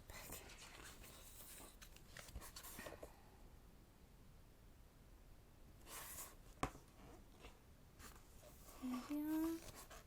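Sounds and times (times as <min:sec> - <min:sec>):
paper page rustling: 0:00.3 - 0:03.0, 0:08.0 - 0:10.0.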